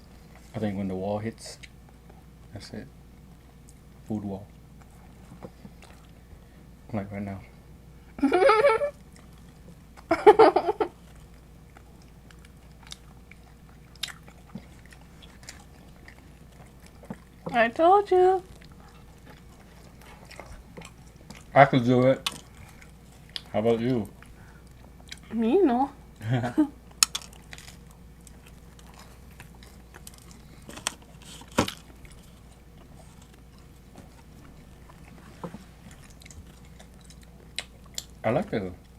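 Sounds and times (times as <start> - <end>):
chewing and crunching: 0.0 - 6.7, 8.9 - 38.9
mouth clicks chewing: 35.9 - 38.2.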